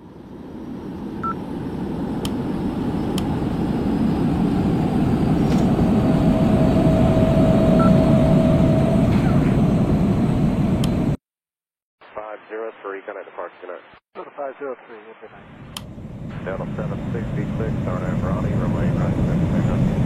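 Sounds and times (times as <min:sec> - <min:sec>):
steady whine: 0:15.3 - 0:20.0.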